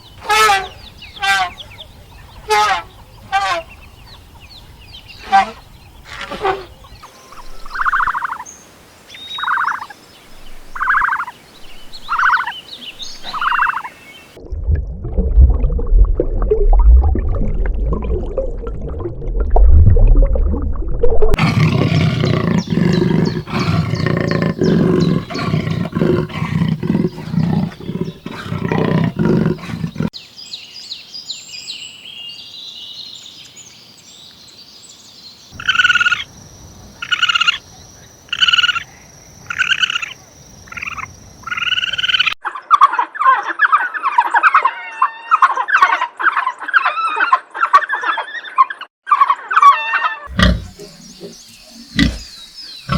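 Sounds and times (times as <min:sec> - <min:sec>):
animal calls: 0:00.0 - 0:01.8, 0:02.4 - 0:03.8, 0:05.2 - 0:08.4, 0:10.7 - 0:11.3, 0:12.1 - 0:12.5, 0:21.4 - 0:30.2, 0:39.5 - 0:52.9
high chirping: 0:09.2 - 0:09.9, 0:10.8 - 0:14.0, 0:50.3 - 0:52.9.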